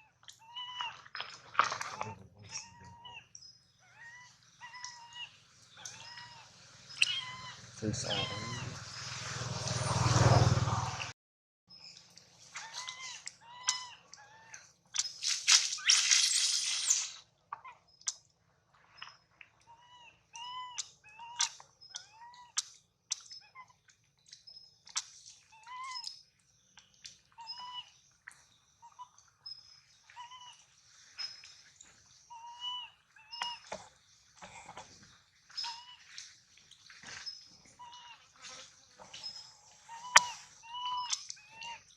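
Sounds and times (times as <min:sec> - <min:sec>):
baby monkey crying squeals: 0:00.4 - 0:00.9, 0:02.5 - 0:03.2, 0:03.8 - 0:08.8, 0:12.6 - 0:14.6, 0:19.7 - 0:22.6, 0:25.5 - 0:26.1, 0:27.4 - 0:27.9, 0:30.2 - 0:30.6, 0:32.3 - 0:33.7, 0:35.6 - 0:36.0, 0:37.8 - 0:38.2, 0:39.2 - 0:41.9.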